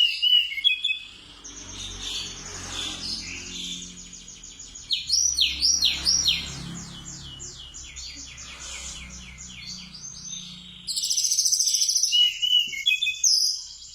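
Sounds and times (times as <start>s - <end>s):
songbird whistling: 0.0s - 1.2s, 7.9s - 13.8s
buzzy high bird trill: 0.0s - 13.9s.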